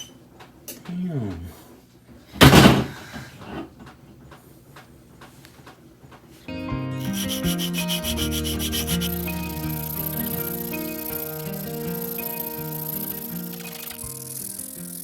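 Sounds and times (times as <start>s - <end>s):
background music: 6.5s - 15.0s
sanding wood: 7.0s - 13.5s.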